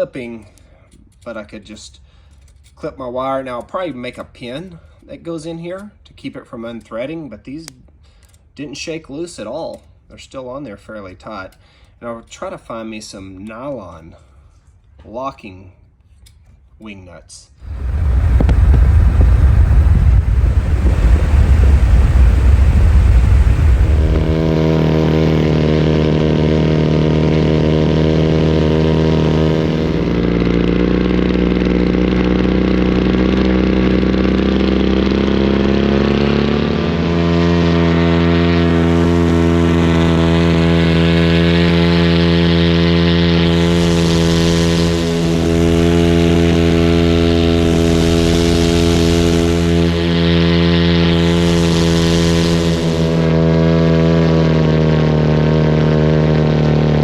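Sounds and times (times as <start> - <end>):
heavy low rumble: 17.6 - 57.0
paramotor engine droning: 17.6 - 57.0.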